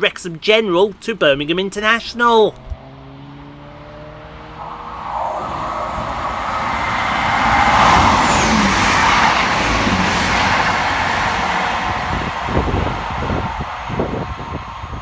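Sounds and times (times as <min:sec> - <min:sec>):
diesel train passing fast: 0:01.6 - 0:15.0.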